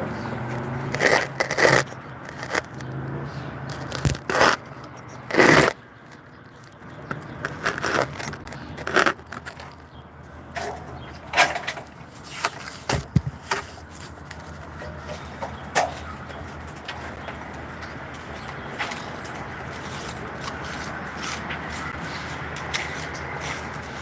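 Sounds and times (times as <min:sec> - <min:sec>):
scrapes and knocks: 0:00.3 - 0:02.9, 0:10.6 - 0:22.0.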